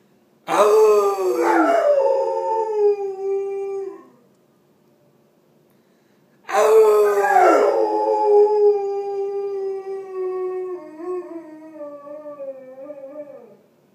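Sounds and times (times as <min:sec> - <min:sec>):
dog howling: 0:00.5 - 0:04.2, 0:06.5 - 0:13.6.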